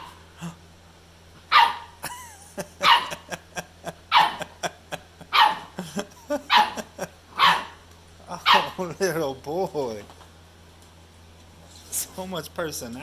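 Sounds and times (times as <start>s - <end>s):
puppy barking: 1.5s - 2.0s, 2.8s - 3.4s, 4.1s - 4.7s, 5.3s - 7.8s, 8.4s - 8.8s.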